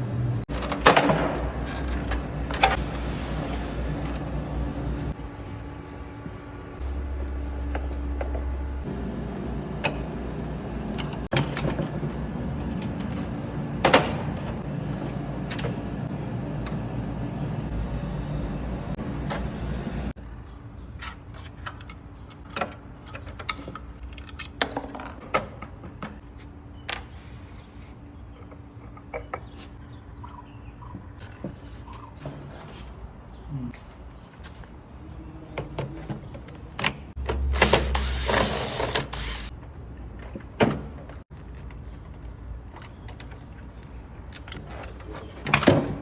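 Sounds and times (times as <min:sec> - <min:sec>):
machine hum: 0:00.0 - 0:20.2.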